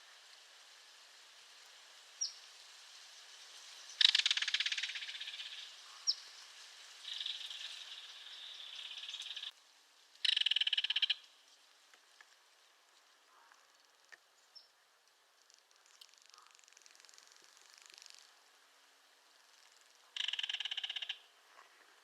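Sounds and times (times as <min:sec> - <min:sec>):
kingfisher rattle call: 0:04.0 - 0:06.2, 0:07.0 - 0:09.5, 0:10.2 - 0:11.3, 0:19.5 - 0:21.3.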